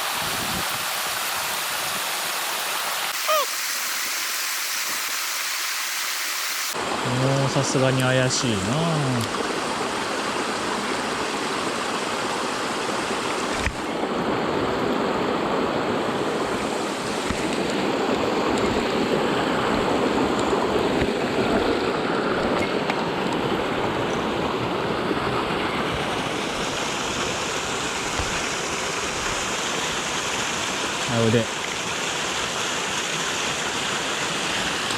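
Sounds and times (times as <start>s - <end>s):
mountain stream rushing: 0.0s - 34.9s.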